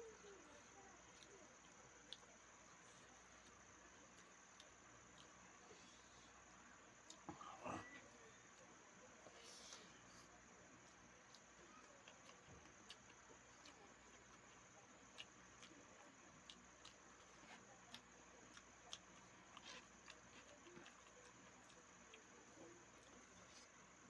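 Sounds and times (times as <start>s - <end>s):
person chewing: 10.8s - 23.9s.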